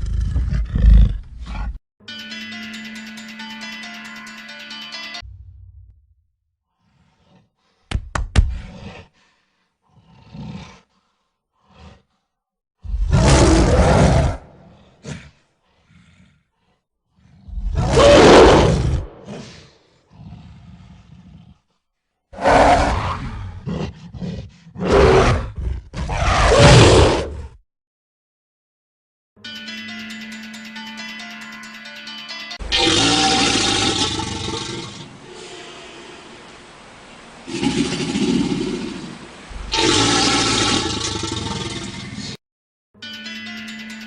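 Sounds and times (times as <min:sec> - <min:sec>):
animal grunts and rumbles: 0:00.0 - 0:01.8, 0:06.8 - 0:21.8, 0:22.4 - 0:27.6, 0:32.7 - 0:36.0, 0:37.5 - 0:42.4
large animal roaring: 0:00.0 - 0:01.8, 0:09.9 - 0:11.0, 0:11.6 - 0:12.2, 0:12.8 - 0:16.4, 0:17.2 - 0:21.6, 0:22.4 - 0:27.6, 0:32.6 - 0:36.4, 0:37.5 - 0:42.4.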